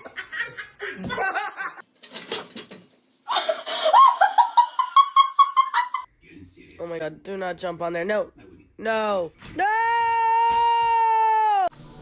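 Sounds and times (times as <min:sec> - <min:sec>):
people laughing: 0:00.0 - 0:01.8, 0:03.3 - 0:06.1.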